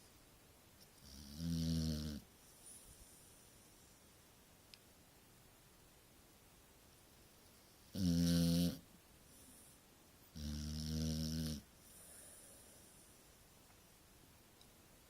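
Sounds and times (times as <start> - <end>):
dog snoring: 1.0 - 2.3, 7.8 - 8.8, 10.3 - 11.7
soft breath: 2.3 - 4.2, 9.2 - 9.9, 11.8 - 13.5.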